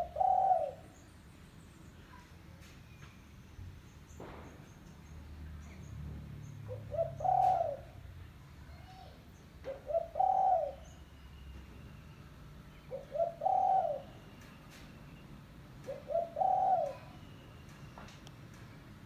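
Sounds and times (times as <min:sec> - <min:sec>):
dove cooing: 0:00.0 - 0:00.9, 0:06.7 - 0:08.0, 0:09.7 - 0:11.0, 0:12.9 - 0:14.2, 0:15.8 - 0:17.3.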